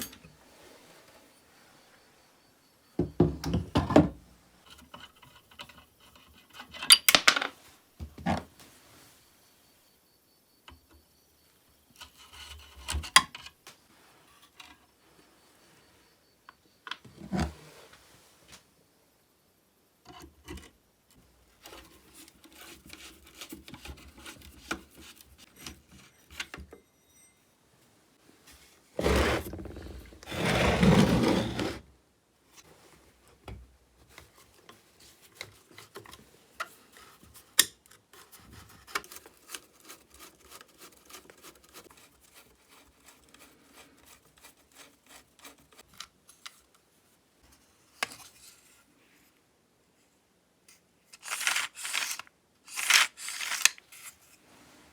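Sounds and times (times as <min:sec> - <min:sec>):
hand tools clicking and scraping: 0:29.0 - 0:31.8.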